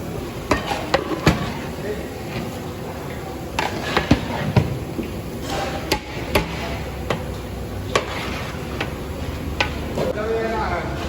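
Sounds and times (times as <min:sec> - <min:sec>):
metal ladle clanking on pot: 0:00.4 - 0:02.6, 0:05.4 - 0:09.0.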